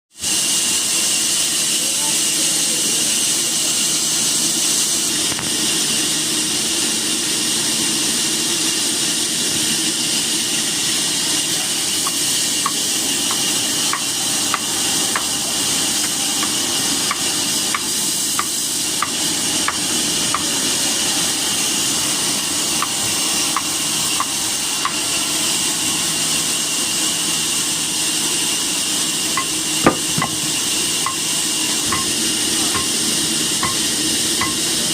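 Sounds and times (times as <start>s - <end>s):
saw cutting wood: 9.7s - 34.9s.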